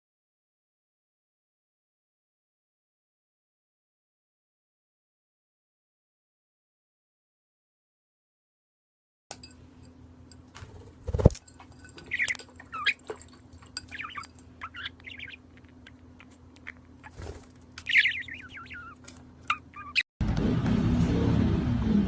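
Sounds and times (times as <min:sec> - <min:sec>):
steady low hum: 0:09.3 - 0:22.0
small bird chirping: 0:11.9 - 0:20.1.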